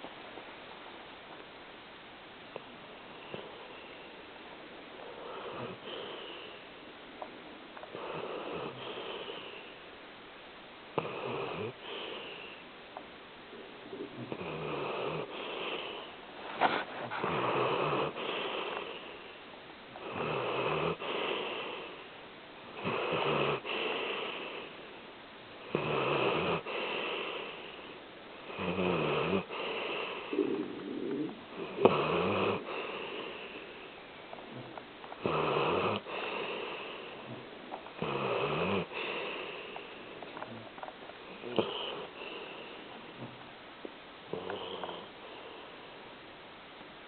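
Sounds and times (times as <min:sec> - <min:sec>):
pet snoring: 0:03.1 - 0:04.0, 0:05.0 - 0:06.6, 0:07.8 - 0:09.8, 0:11.0 - 0:12.6, 0:13.5 - 0:22.1, 0:22.7 - 0:24.9, 0:25.6 - 0:43.4, 0:44.3 - 0:45.7.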